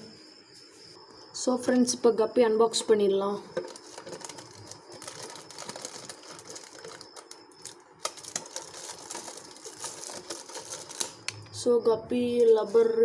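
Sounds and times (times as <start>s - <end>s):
plastic bag crinkling: 3.6s - 11.4s.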